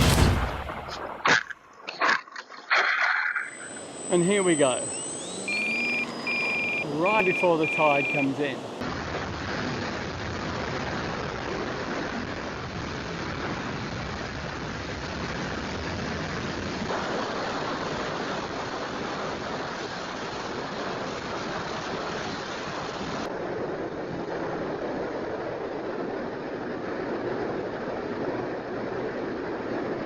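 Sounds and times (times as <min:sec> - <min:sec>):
wind: 0:00.0 - 0:30.0
ocean surf: 0:06.6 - 0:08.8.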